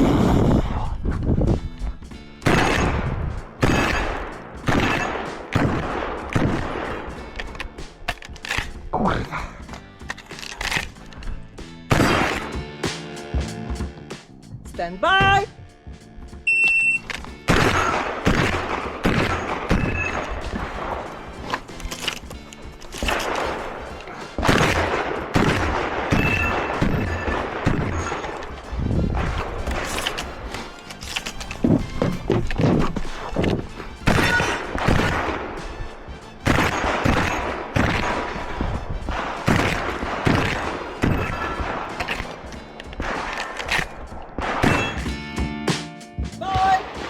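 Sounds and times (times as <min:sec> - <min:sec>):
shotgun shots: 0:02.4 - 0:07.2, 0:11.9 - 0:12.6, 0:17.4 - 0:21.1, 0:23.0 - 0:28.5, 0:34.0 - 0:35.7, 0:36.4 - 0:45.2
shot timer beep: 0:16.5 - 0:17.0.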